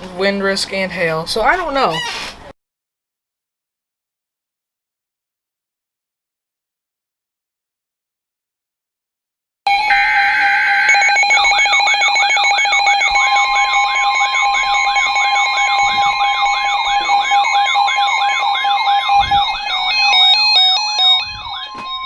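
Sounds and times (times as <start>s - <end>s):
electronic siren warbling: 9.7s - 22.0s
steady alarm tones: 9.7s - 22.0s
steady warning tone: 9.7s - 22.0s.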